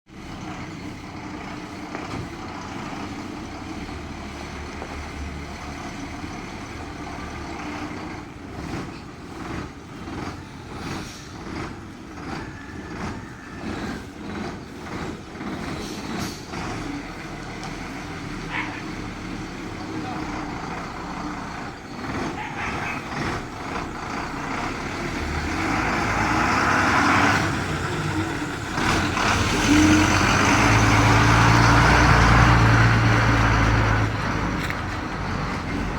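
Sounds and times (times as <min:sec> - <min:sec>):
bus diesel engine running: 0:00.1 - 0:35.9.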